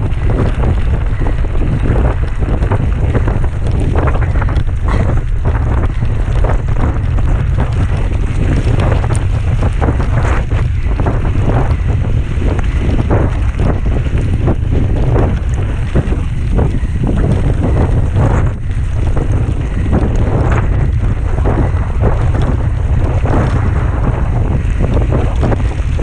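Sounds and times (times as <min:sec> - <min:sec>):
bike rattling over rough ground: 0:00.0 - 0:26.0
wind buffeting microphone: 0:00.0 - 0:26.0.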